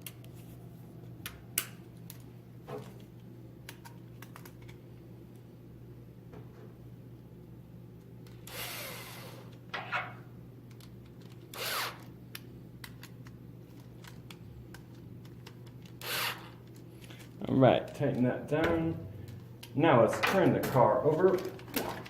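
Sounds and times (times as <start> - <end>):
steady low hum: 0.0 - 22.0
power driver running: 8.3 - 9.6, 11.5 - 12.1, 15.9 - 17.2.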